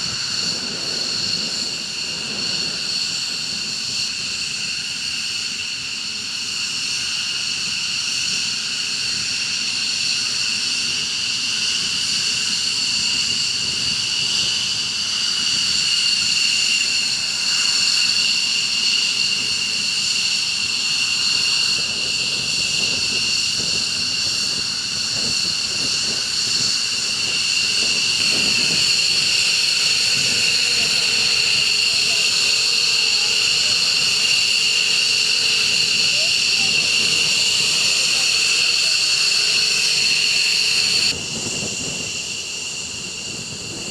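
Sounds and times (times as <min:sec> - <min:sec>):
jet engine whine: 0:00.0 - 0:43.9.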